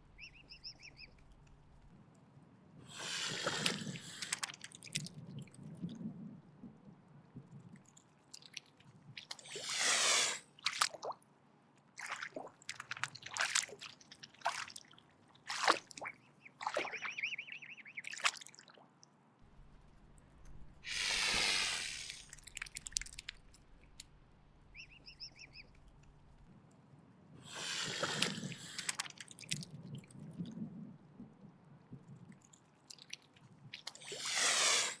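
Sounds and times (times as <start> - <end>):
swan hissing: 2.9 - 4.5, 9.4 - 10.5, 20.8 - 22.9, 27.4 - 29.0, 34.0 - 35.0
swan call: 16.8 - 18.2.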